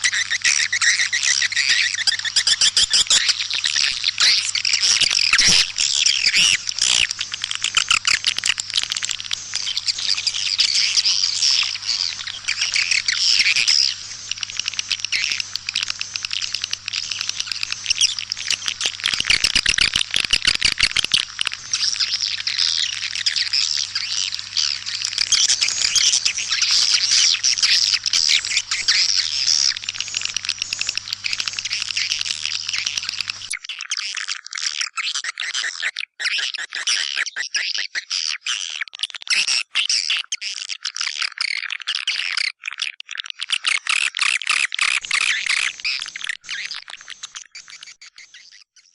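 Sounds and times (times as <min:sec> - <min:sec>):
swiftlet chirps and twitters: 0:00.0 - 0:33.5, 0:44.8 - 0:48.6
steady low hum: 0:02.2 - 0:33.5.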